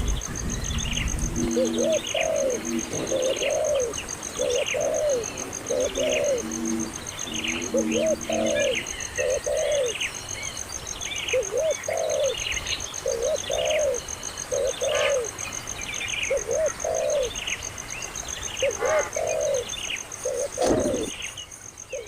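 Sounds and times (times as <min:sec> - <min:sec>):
high pulsing buzz: 0:00.0 - 0:09.6
small birds chirping: 0:00.0 - 0:22.0
dove cooing: 0:00.4 - 0:10.1, 0:11.3 - 0:15.4, 0:16.3 - 0:17.4, 0:18.6 - 0:21.2.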